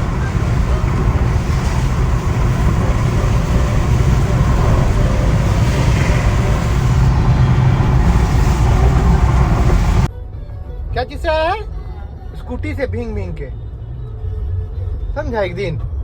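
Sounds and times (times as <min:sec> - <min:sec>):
vehicle engine and road rumble: 0:00.0 - 0:10.1.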